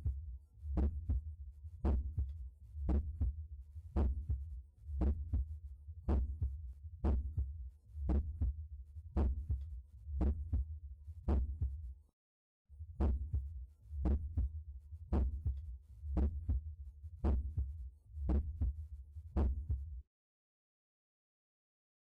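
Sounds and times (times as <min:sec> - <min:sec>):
heartbeat thuds: 0:00.8 - 0:02.3, 0:02.9 - 0:03.4, 0:04.0 - 0:05.5, 0:06.1 - 0:07.5, 0:08.1 - 0:08.6, 0:09.2 - 0:10.7, 0:11.3 - 0:11.8, 0:13.0 - 0:14.5, 0:15.1 - 0:16.6, 0:17.2 - 0:18.8, 0:19.4 - 0:19.9.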